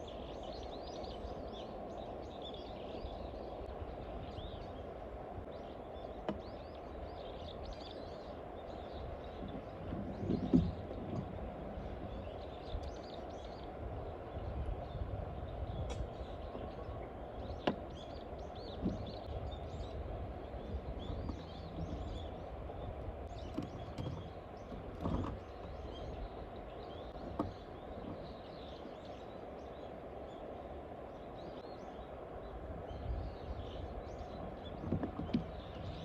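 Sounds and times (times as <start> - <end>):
birds chirping: 0.0 - 36.0.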